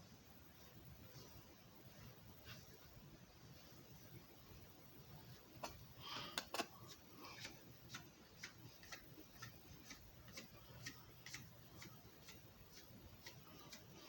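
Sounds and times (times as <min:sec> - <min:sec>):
faint steady ticking: 0:05.3 - 0:14.0.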